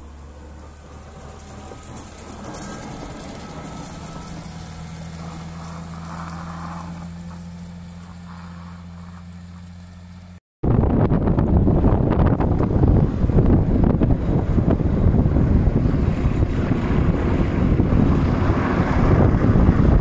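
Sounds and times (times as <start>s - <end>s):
heavy machine engine humming: 0.0s - 20.0s
metallic rattling and clicking: 0.4s - 10.3s.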